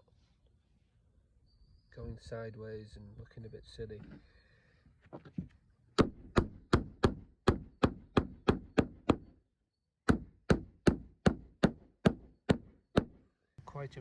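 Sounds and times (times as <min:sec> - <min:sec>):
hammer driving nail into timber: 0:06.0 - 0:09.4, 0:10.1 - 0:13.2.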